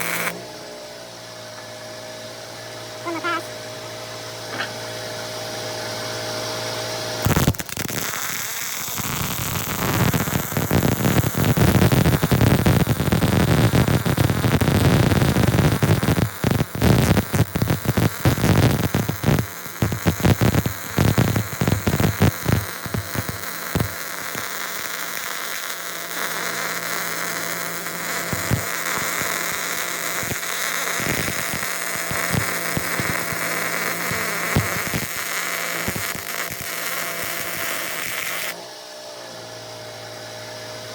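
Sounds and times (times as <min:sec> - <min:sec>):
arc welding crackling hiss: 0:00.0 - 0:00.4, 0:07.2 - 0:38.6.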